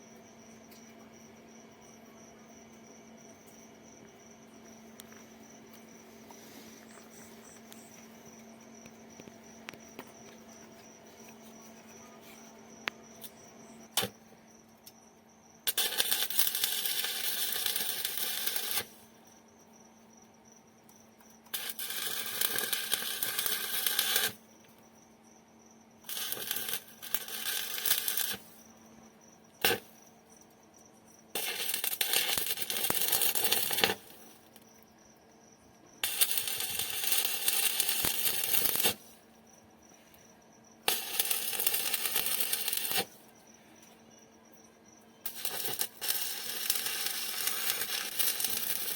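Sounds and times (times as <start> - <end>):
faint steady hum: 0.0 - 48.9
electric arc welding crackling: 15.7 - 19.0, 21.5 - 24.4, 26.0 - 28.5, 29.6 - 29.9, 31.4 - 34.4, 36.0 - 39.1, 40.9 - 43.1, 45.2 - 48.9.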